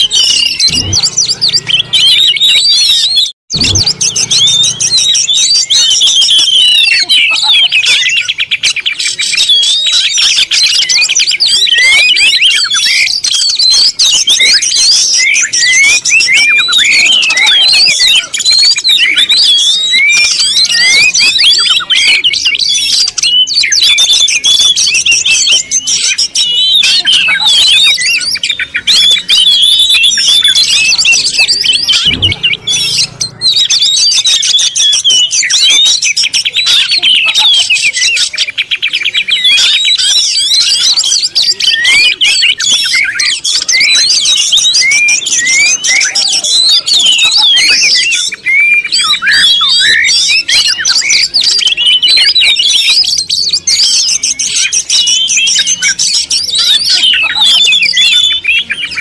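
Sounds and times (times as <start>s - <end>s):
small birds chirping: 0.0s - 59.0s
low thump: 0.7s - 1.6s, 31.9s - 33.2s.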